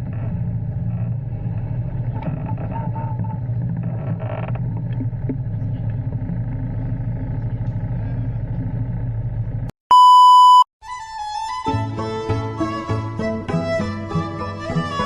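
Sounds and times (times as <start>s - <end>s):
motorcycle running: 0.0s - 9.7s
loud electronic beep: 9.9s - 10.7s.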